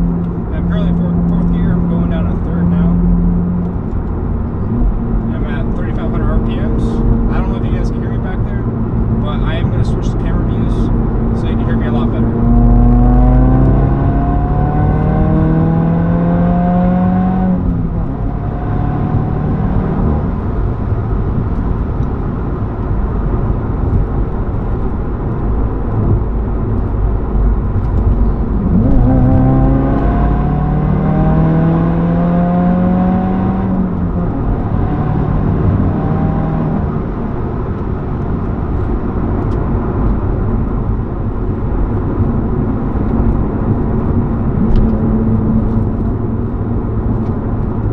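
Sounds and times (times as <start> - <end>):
loud car engine revving: 0.0 - 21.4, 26.1 - 47.9
road noise: 0.0 - 47.9.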